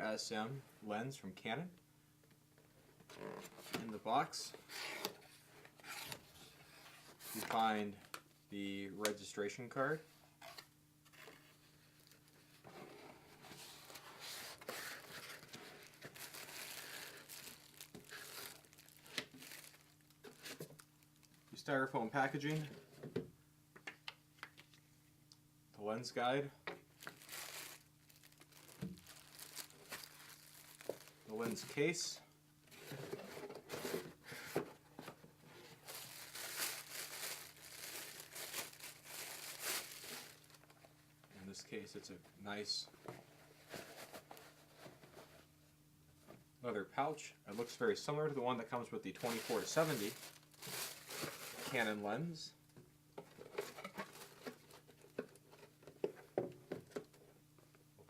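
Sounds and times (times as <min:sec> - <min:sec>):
packaging rustling and crinkling: 0:13.5 - 0:21.4, 0:27.0 - 0:31.8, 0:32.8 - 0:40.9, 0:49.2 - 0:51.9, 0:53.3 - 0:57.1.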